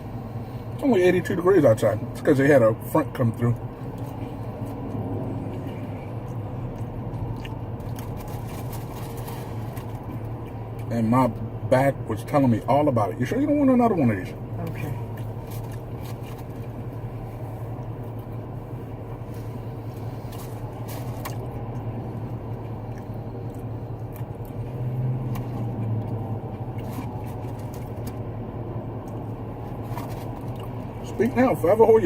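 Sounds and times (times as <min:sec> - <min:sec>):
vehicle engine hum: 0:00.0 - 0:32.0
person chewing fried food: 0:03.6 - 0:10.9, 0:14.6 - 0:31.0.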